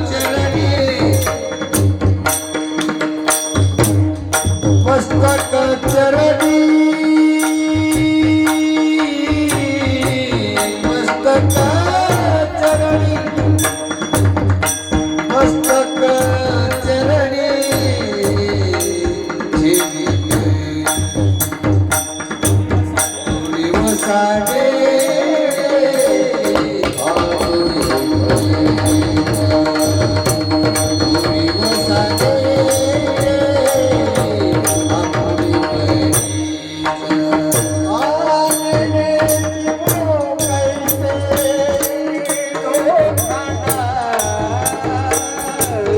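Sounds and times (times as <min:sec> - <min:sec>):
jingling hand cymbals: 0:00.0 - 0:45.9
sung melody: 0:00.0 - 0:45.9
tabla-like drumming: 0:00.0 - 0:45.9.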